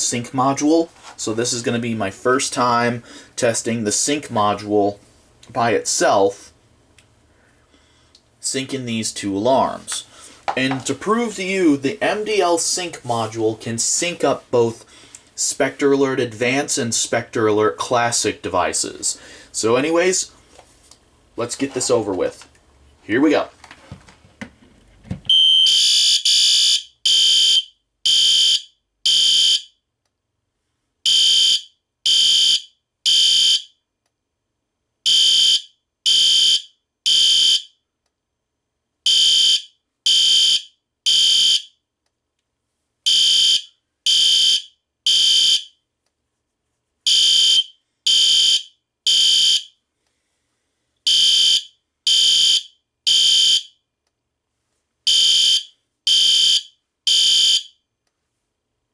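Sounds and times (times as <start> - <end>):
fire alarm horns blasting: 25.3 - 29.8, 31.1 - 33.8, 35.1 - 37.7, 39.1 - 41.7, 43.1 - 45.7, 47.1 - 49.7, 51.1 - 53.7, 55.1 - 57.8.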